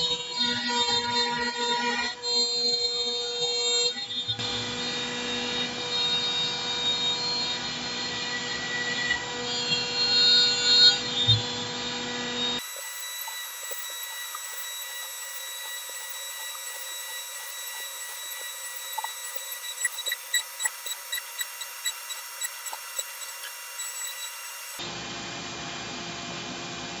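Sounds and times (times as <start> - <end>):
router spindle whine: 6.5 - 25.0.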